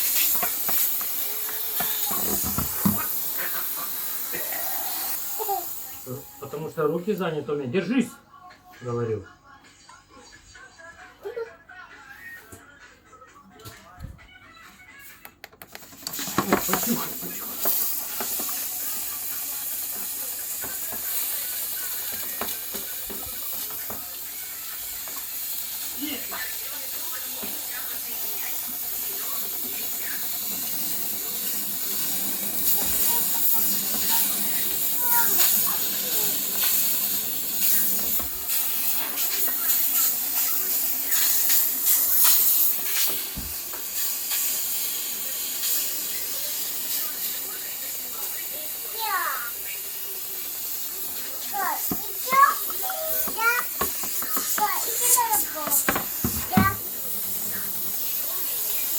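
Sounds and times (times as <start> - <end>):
steam mop hissing: 0.0 - 7.2, 15.7 - 58.9
nozzle clicks and taps: 15.2 - 15.9.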